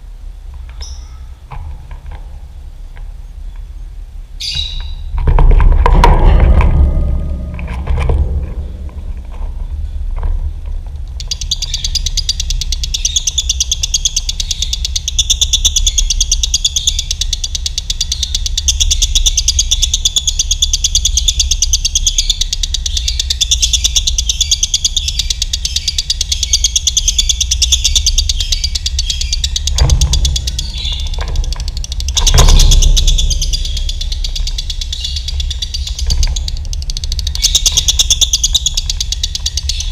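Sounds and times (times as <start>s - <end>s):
steady low hum: 0.0s - 39.9s
lovebirds chattering trill: 11.2s - 39.9s.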